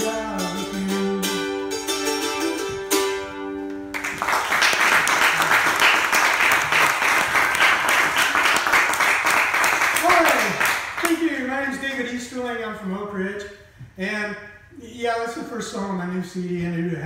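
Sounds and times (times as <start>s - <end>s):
audience applause: 3.9s - 11.3s.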